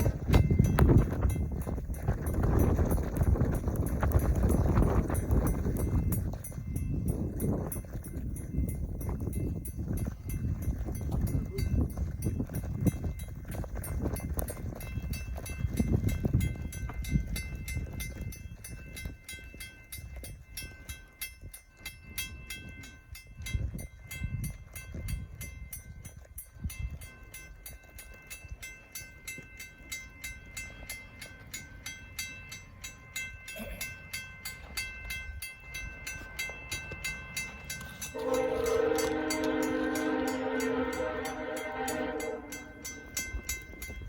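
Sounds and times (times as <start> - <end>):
railway crossing bell ringing: 0.0 - 44.0
locomotive air horn chord: 38.1 - 43.3.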